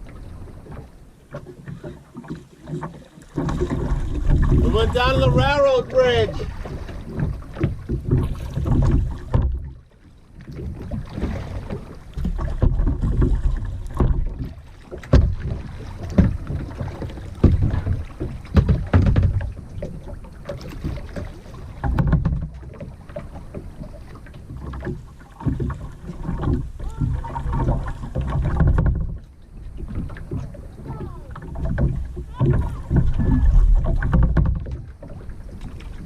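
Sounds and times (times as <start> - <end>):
paddle splashing in water: 0.0 - 36.0
sharp knocks: 15.0 - 15.5.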